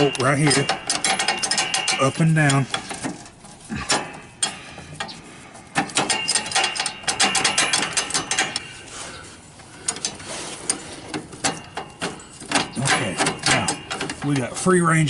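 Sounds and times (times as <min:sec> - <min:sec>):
metallic clicking and rattling: 0:00.0 - 0:08.9, 0:09.6 - 0:15.0.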